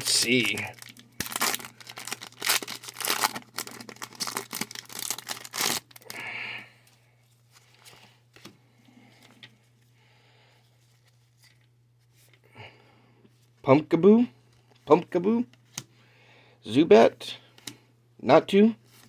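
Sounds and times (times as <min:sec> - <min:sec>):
foil pack tearing and crinkling: 0:00.0 - 0:06.2
faint handling sounds: 0:06.8 - 0:12.4.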